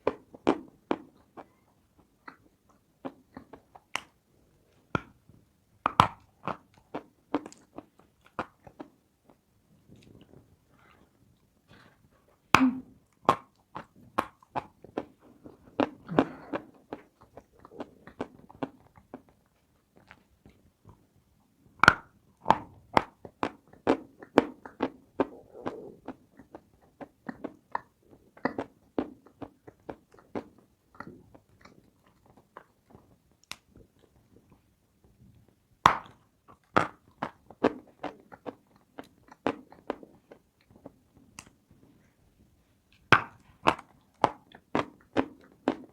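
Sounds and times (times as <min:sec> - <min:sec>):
crisp cracking chews: 0:13.1 - 0:21.0.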